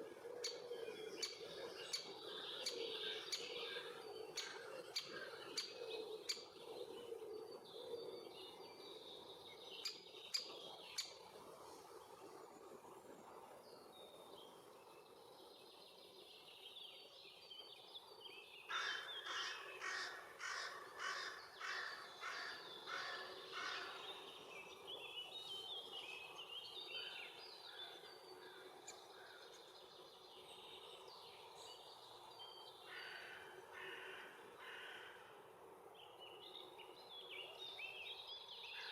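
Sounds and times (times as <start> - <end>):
small birds chirping and trilling: 0.0 - 38.9
woodland background hiss: 0.0 - 38.9
harsh rasping bird calls: 18.7 - 24.0.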